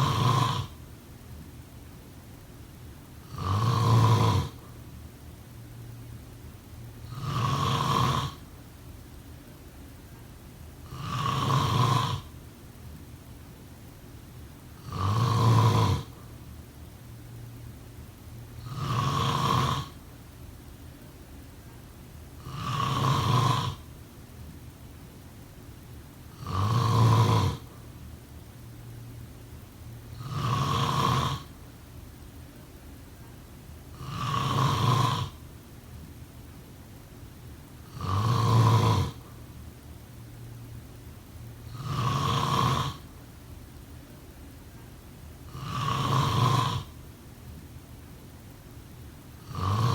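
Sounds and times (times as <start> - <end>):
person snoring: 0.0 - 0.8, 3.2 - 4.7, 7.0 - 8.4, 10.8 - 12.3, 14.8 - 16.3, 18.6 - 20.0, 22.4 - 23.9, 26.3 - 27.8, 30.2 - 31.6, 33.9 - 35.4, 37.9 - 39.3, 41.7 - 43.1, 45.5 - 47.0, 49.4 - 49.9.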